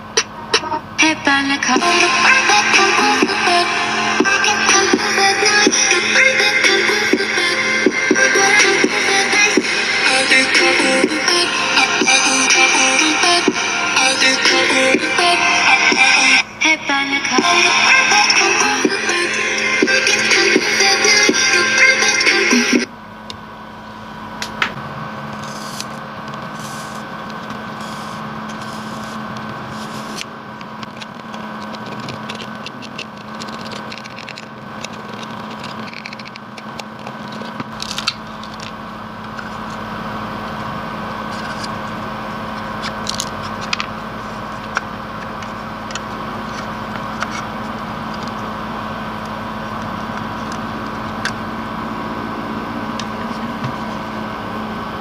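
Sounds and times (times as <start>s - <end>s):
electrical hum: 0.0s - 55.0s
tools clicking and scraping plastic: 29.8s - 39.5s, 42.8s - 43.9s, 44.5s - 47.5s.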